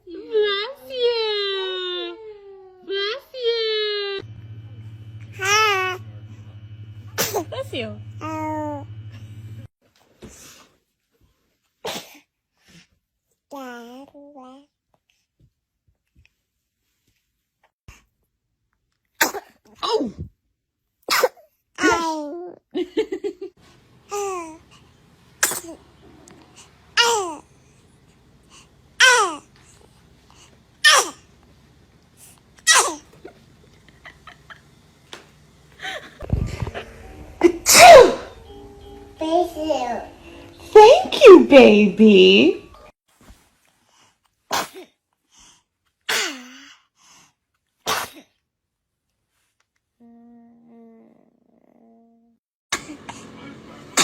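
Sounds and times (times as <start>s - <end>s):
baby sneezing: 11.8s - 12.3s, 19.2s - 20.3s, 21.1s - 22.2s, 25.4s - 25.8s, 27.0s - 27.4s, 30.8s - 31.2s, 32.6s - 33.1s, 37.7s - 38.3s, 44.5s - 44.9s, 46.1s - 46.8s, 47.8s - 48.3s
baby vocal sounds: 25.4s - 27.5s, 29.0s - 29.5s
baby cooing: 25.6s - 27.5s, 29.0s - 29.5s.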